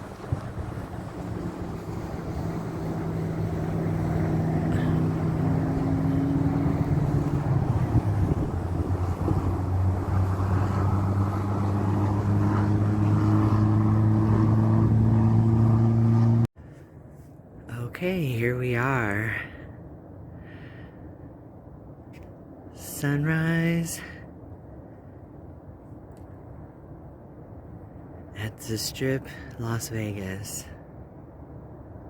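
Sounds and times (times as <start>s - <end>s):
car engine and road hum: 0.0s - 20.2s.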